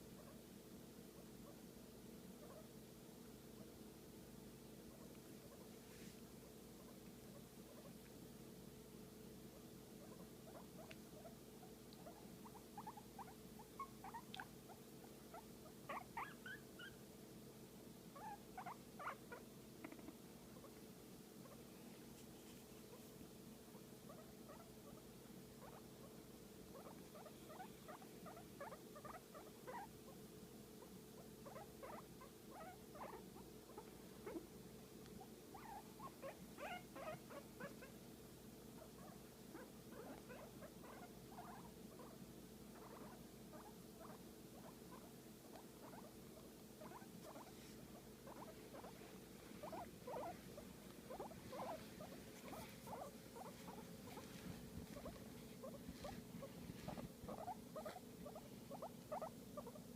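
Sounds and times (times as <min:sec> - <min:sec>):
steady low hum: 0:00.0 - 0:59.9
guinea pig squeaking: 0:00.2 - 0:00.4, 0:02.4 - 0:02.7, 0:04.9 - 0:05.7, 0:06.8 - 0:08.0, 0:09.5 - 0:17.0, 0:18.1 - 0:20.8, 0:21.4 - 0:21.6, 0:24.1 - 0:30.2, 0:30.8 - 0:34.4, 0:35.2 - 0:38.0, 0:38.8 - 0:59.9.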